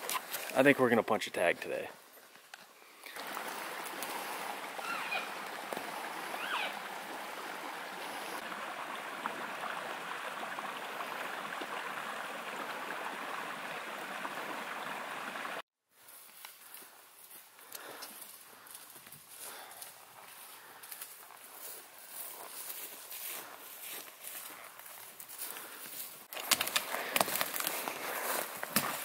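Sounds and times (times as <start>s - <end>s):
stream rushing water: 3.1s - 15.6s.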